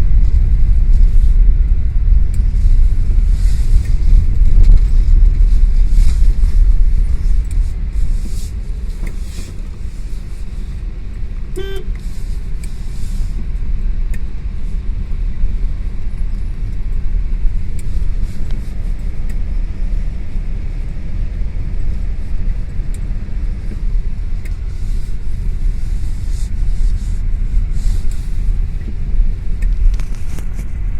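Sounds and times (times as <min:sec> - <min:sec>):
steady low rumble: 0:00.0 - 0:30.9
brief horn toot: 0:11.5 - 0:12.0.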